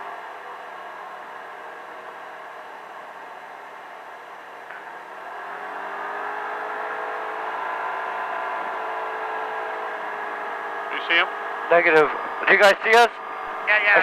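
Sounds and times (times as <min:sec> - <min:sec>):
vehicle engine accelerating: 0:00.0 - 0:14.0.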